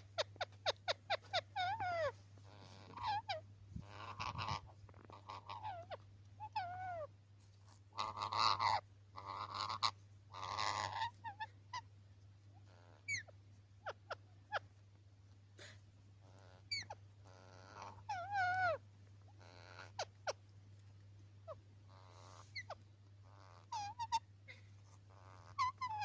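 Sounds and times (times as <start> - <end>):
parrot chirping and squawking: 0.0 - 7.1, 7.7 - 11.9, 12.6 - 14.7, 16.2 - 20.4, 21.4 - 26.0
low steady hum: 0.0 - 26.0
parrot screeching: 0.8 - 4.6, 8.0 - 11.8, 16.4 - 18.8, 23.4 - 24.2, 25.2 - 26.0.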